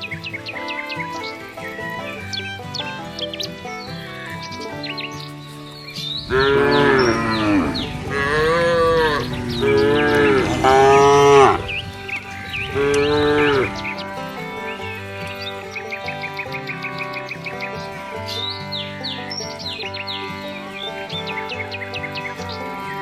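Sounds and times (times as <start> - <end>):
background music: 0.0 - 23.0
bird-like chirps: 0.0 - 23.0
cattle mooing: 6.1 - 15.2.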